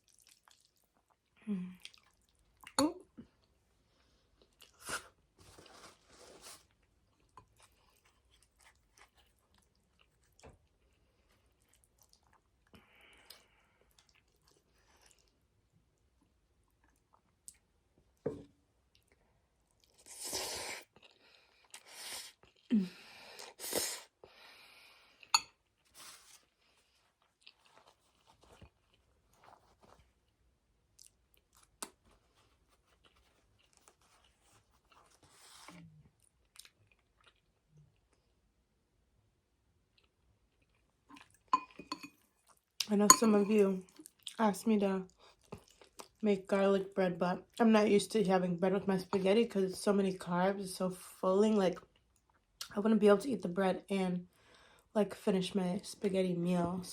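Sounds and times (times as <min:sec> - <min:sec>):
person chewing spaghetti: 0:00.0 - 0:03.6, 0:04.2 - 0:05.9, 0:06.6 - 0:15.7, 0:18.9 - 0:22.7, 0:25.0 - 0:38.4, 0:39.8 - 0:42.9, 0:43.8 - 0:44.4, 0:45.1 - 0:46.2.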